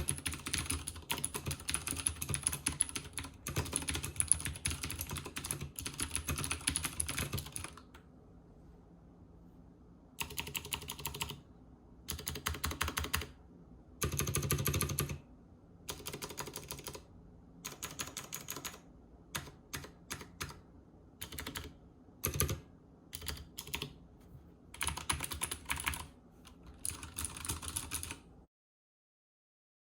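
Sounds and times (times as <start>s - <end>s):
mechanical keyboard typing: 0.0s - 8.0s, 10.2s - 11.4s, 12.1s - 13.4s, 14.0s - 15.2s, 15.9s - 20.6s, 21.2s - 24.0s, 24.8s - 28.3s.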